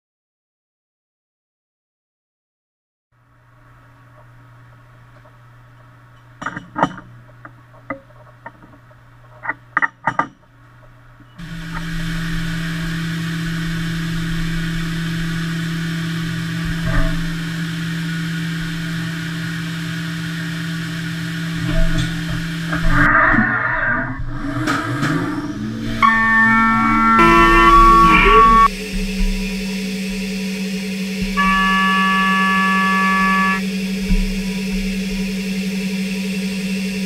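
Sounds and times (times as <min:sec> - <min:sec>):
sharp clicks and knocks: 0:06.2 - 0:10.4
milling machine hum: 0:10.9 - 0:37.0.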